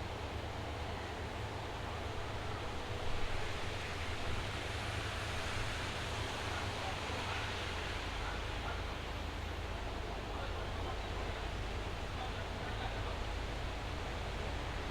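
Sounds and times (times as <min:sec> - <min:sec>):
rain falling steadily: 0:00.0 - 0:14.9.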